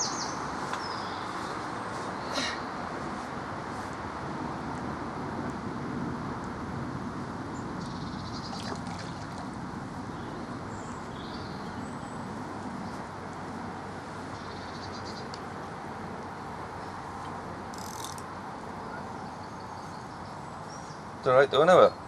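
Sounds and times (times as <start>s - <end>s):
steady outdoor rumble: 0.0s - 22.0s
fishing reel clicking: 17.7s - 18.2s.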